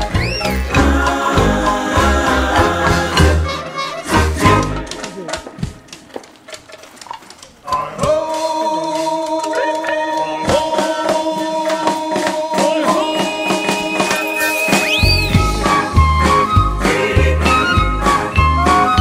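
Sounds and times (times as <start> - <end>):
person singing: 0.5 - 3.6, 7.6 - 15.5.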